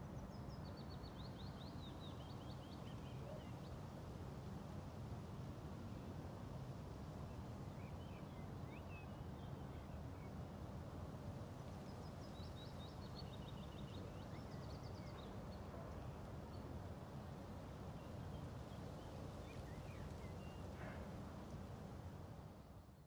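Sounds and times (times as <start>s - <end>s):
faint songbird chirps: 0.0s - 3.8s, 11.7s - 16.8s, 17.8s - 21.2s.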